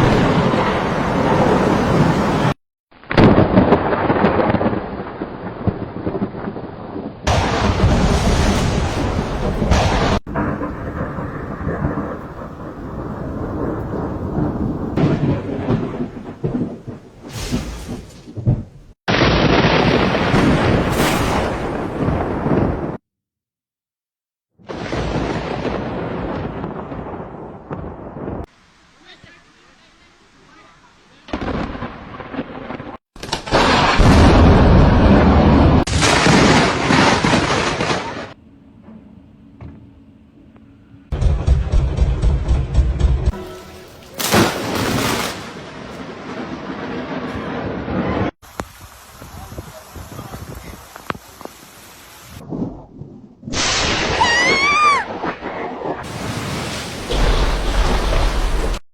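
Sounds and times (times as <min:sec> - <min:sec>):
thunder claps: 0:00.0 - 0:23.0, 0:41.1 - 0:51.5, 0:52.4 - 0:58.8
thunder rumbling: 0:00.0 - 0:23.0, 0:24.7 - 0:28.5, 0:31.3 - 0:38.8, 0:41.1 - 0:58.8.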